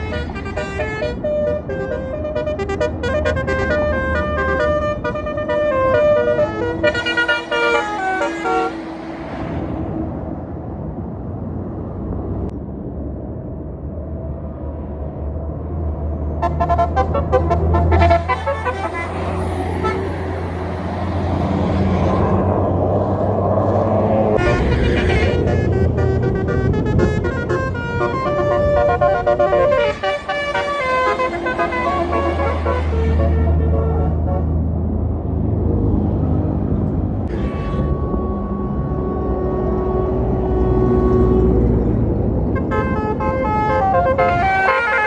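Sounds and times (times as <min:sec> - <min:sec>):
bus horn playing fast melody: 0:00.0 - 0:09.0, 0:16.4 - 0:20.4, 0:24.4 - 0:34.6, 0:37.3 - 0:45.0
steady rushing noise: 0:00.0 - 0:33.5.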